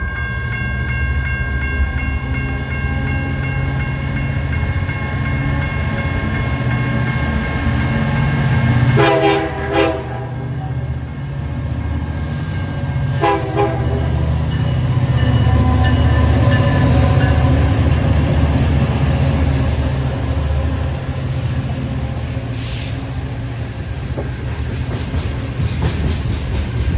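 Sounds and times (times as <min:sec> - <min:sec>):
diesel locomotives rumbling: 0:00.0 - 0:26.9
locomotive horn blasts: 0:08.9 - 0:10.8, 0:13.1 - 0:14.3.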